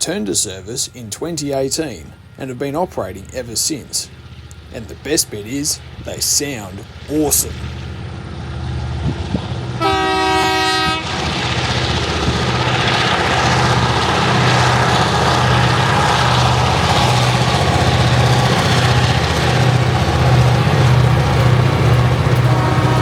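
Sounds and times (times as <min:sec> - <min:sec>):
locomotive diesel engines running: 0:00.0 - 0:23.0
locomotive horn blast: 0:09.8 - 0:11.6, 0:15.4 - 0:23.0.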